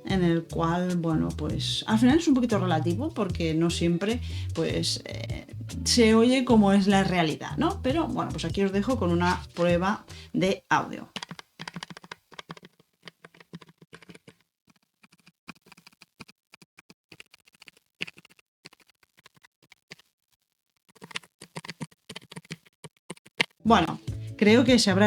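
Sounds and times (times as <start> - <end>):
mechanical keyboard typing: 11.1 - 14.4, 20.9 - 23.6.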